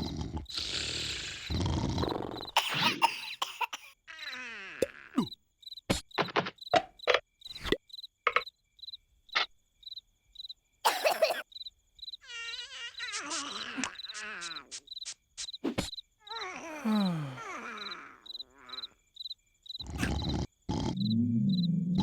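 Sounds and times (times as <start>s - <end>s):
crickets chirping: 0.0s - 22.0s
wavering cartoon voice: 4.1s - 5.3s, 12.2s - 14.9s, 16.2s - 19.0s.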